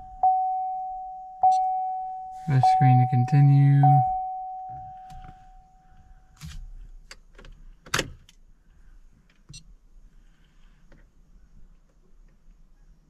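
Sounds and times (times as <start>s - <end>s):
steady electronic beep tone: 0.0s - 5.9s.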